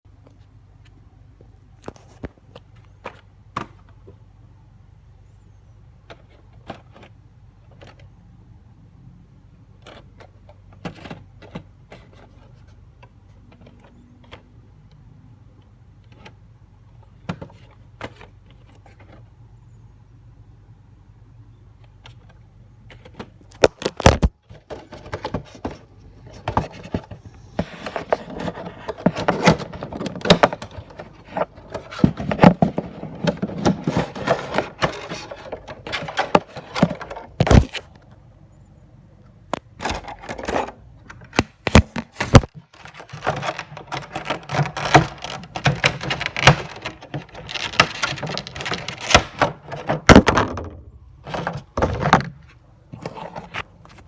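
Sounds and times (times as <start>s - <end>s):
cardboard and plastic rustling: 9.8s - 14.4s, 22.9s - 38.0s, 39.5s - 54.0s.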